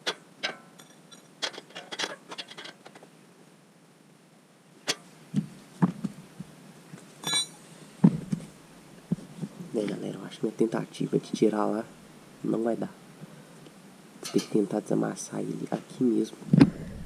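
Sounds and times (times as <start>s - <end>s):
ringing metal clink: 7.2s - 7.6s.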